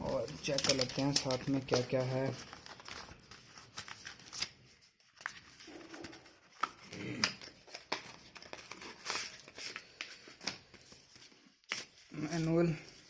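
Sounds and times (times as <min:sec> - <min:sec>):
paper and plastic rustling: 0:00.0 - 0:13.0.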